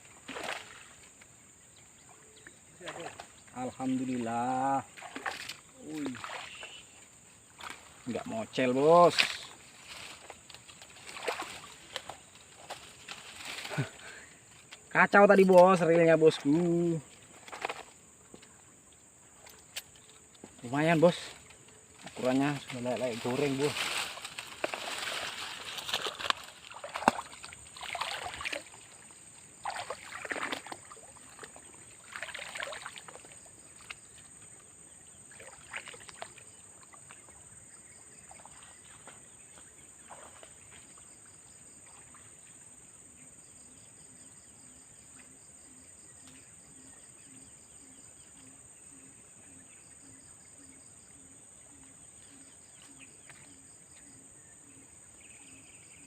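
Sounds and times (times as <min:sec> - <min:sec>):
rustling and splashing: 0:00.0 - 0:01.4, 0:02.2 - 0:42.6
insects droning and chirping: 0:00.0 - 0:56.0.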